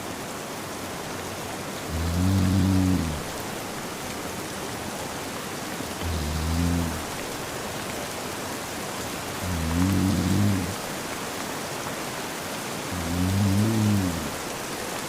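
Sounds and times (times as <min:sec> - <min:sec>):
steady rain: 0:00.0 - 0:15.0
man snoring: 0:01.9 - 0:03.3, 0:06.0 - 0:07.2, 0:09.4 - 0:10.8, 0:12.9 - 0:14.4.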